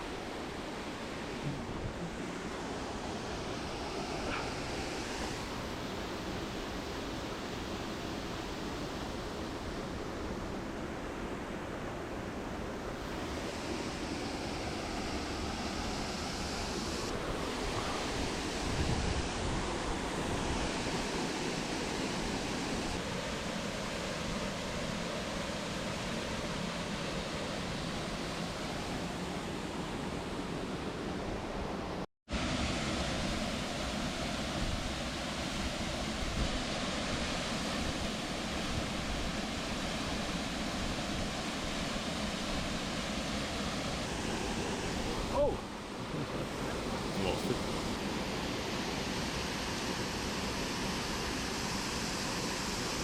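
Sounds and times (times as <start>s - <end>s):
waterfall rushing: 32.4s - 49.0s.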